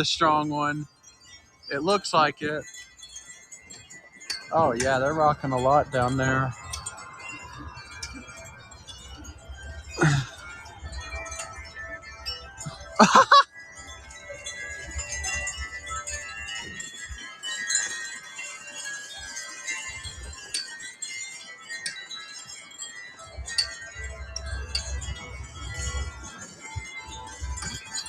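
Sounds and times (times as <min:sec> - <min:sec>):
wind rumbling on microphone: 0:00.0 - 0:13.1, 0:22.3 - 0:28.0
wind chimes ringing: 0:00.0 - 0:28.0.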